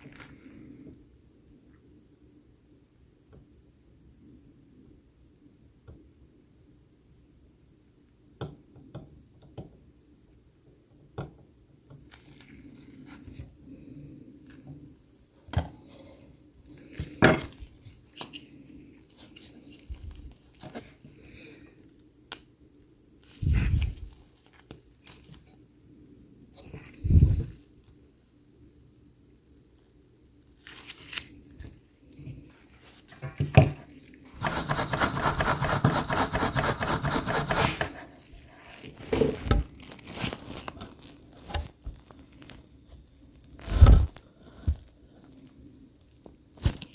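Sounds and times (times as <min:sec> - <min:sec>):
rustling and scraping: 0:30.6 - 0:45.4.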